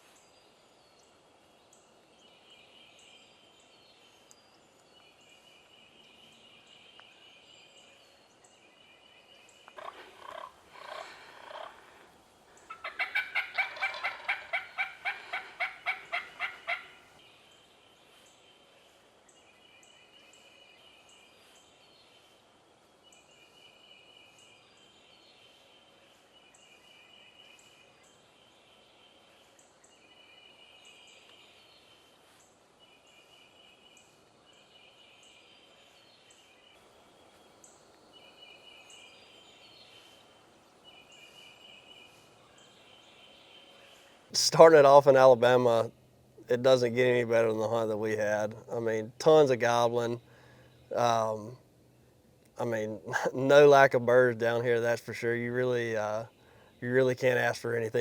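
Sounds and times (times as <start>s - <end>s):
turkeys gobbling: 9.8s - 17.1s
rattling turkey notes: 12.7s - 16.8s.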